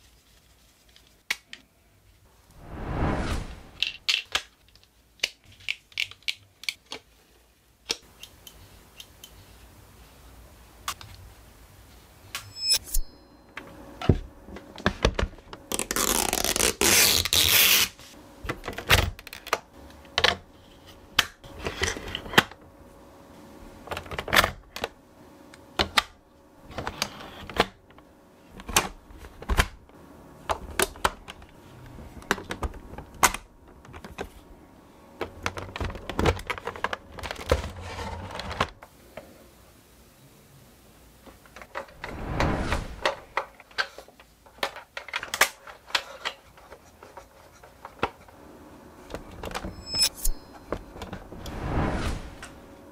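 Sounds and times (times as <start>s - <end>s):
rustling or scraping: 2.6s - 4.0s.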